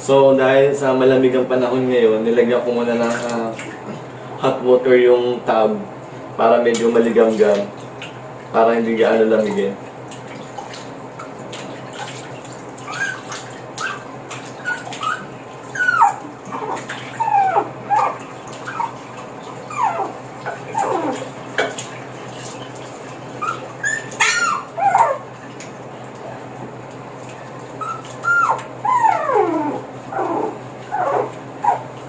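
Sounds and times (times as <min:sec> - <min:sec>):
puppy whimpering and yelping: 0:12.8 - 0:21.3, 0:23.3 - 0:25.3, 0:27.8 - 0:32.0.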